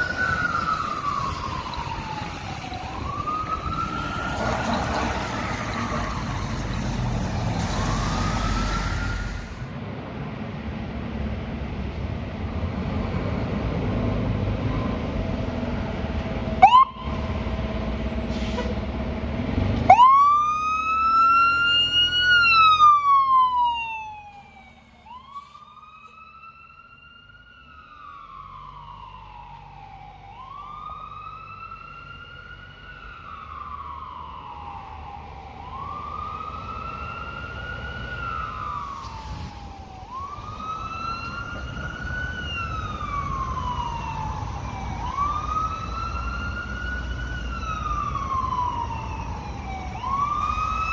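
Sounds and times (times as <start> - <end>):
fire truck siren wailing: 0.0 - 9.7, 14.0 - 18.9, 19.8 - 50.9
heavy truck engine rumble: 0.0 - 20.0, 38.0 - 50.9
short siren chirp: 38.6 - 50.9.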